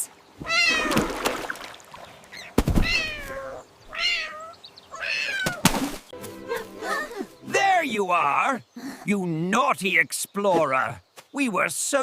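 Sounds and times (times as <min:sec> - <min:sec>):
kitten meowing: 0:00.4 - 0:01.1, 0:02.8 - 0:05.6.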